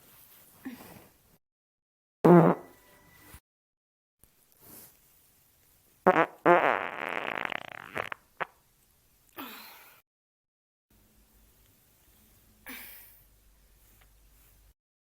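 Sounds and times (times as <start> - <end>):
farts: 2.3 - 2.8, 6.0 - 8.6.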